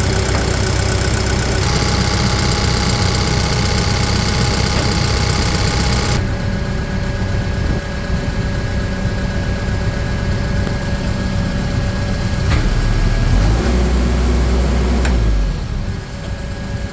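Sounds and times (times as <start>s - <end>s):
sharp clicks: 0.0s - 6.2s
diesel engine running: 0.0s - 16.9s.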